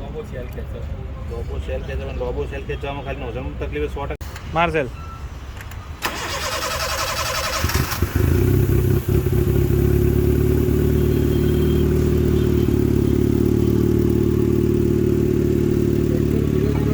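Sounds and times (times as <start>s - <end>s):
diesel car engine cranking and idling: 6.0s - 16.9s.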